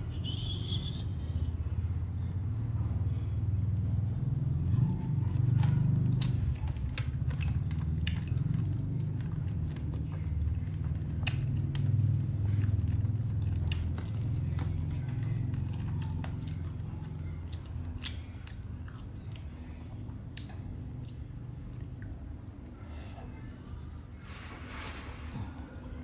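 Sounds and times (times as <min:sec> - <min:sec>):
person chewing food: 0:05.3 - 0:19.6.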